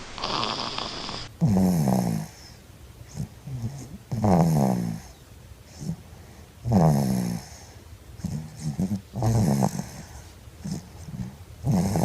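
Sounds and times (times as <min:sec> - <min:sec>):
baby snoring loudly: 0:00.2 - 0:02.4, 0:08.6 - 0:10.0, 0:11.7 - 0:12.0.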